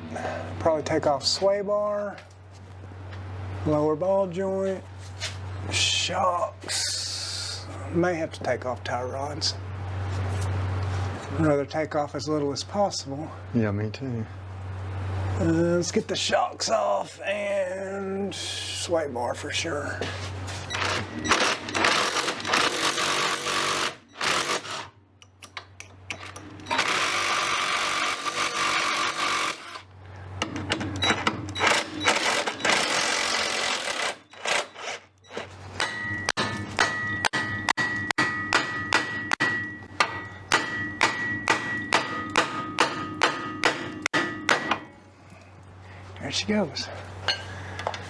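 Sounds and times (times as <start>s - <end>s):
pneumatic impact wrench: 20.7s - 25.0s, 26.2s - 29.9s, 31.5s - 36.0s
sharp ringing metallic blows: 35.8s - 45.1s.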